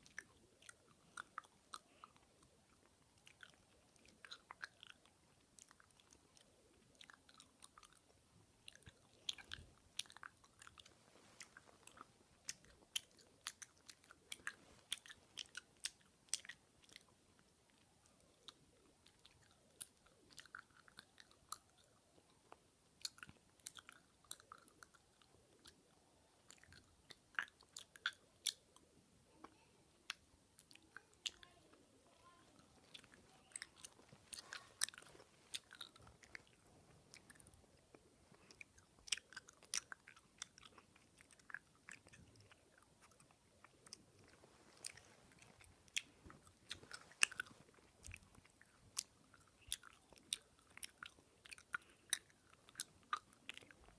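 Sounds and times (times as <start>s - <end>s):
gum chewing mouth clicks: 0.0s - 31.8s, 32.6s - 53.9s.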